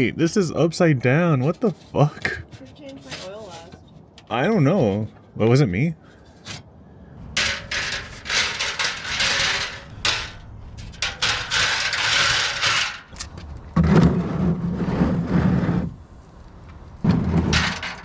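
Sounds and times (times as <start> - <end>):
metal tools clanking and scraping: 1.3 - 6.7, 7.4 - 13.1.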